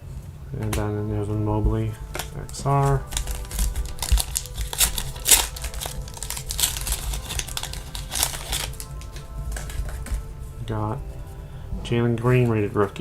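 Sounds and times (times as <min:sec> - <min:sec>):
card pack wrapper crinkling: 0:01.9 - 0:11.4.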